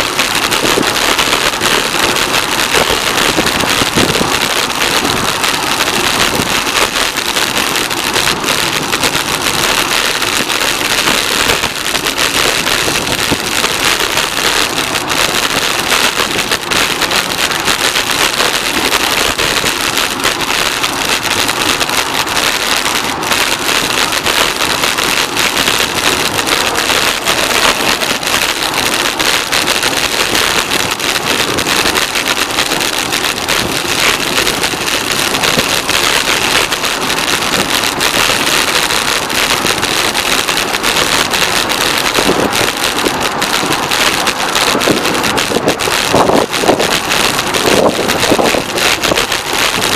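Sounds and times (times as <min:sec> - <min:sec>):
air and tyre rushing hiss: 0:00.0 - 0:49.9.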